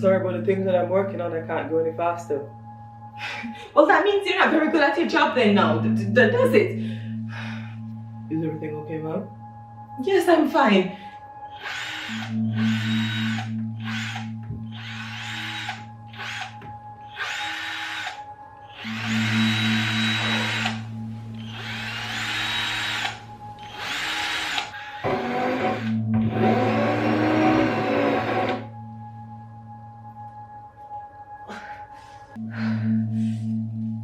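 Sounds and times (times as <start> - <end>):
power drill running: 11.5 - 20.8, 21.4 - 28.6.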